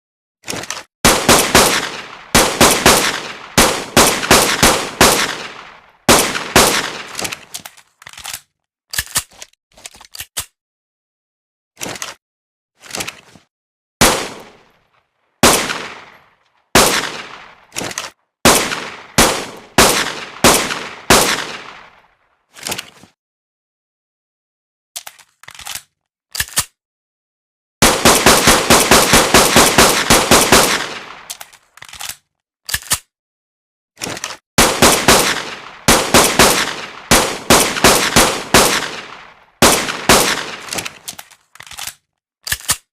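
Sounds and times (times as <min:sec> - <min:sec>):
pistol gunshots: 0:01.0 - 0:07.5, 0:14.0 - 0:14.6, 0:15.4 - 0:16.2, 0:16.8 - 0:17.8, 0:18.5 - 0:22.0, 0:27.8 - 0:31.3, 0:34.6 - 0:41.1.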